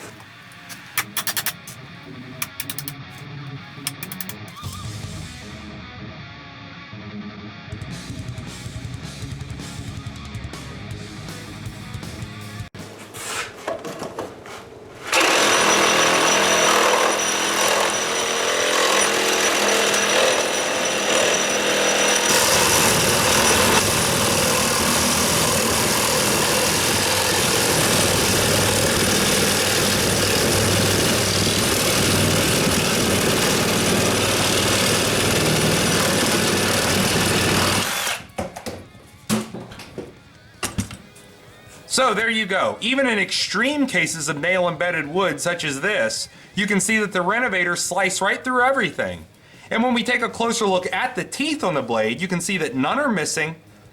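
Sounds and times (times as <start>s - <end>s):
reciprocating saw cutting wood and nails: 0.0s - 4.8s, 15.0s - 38.3s.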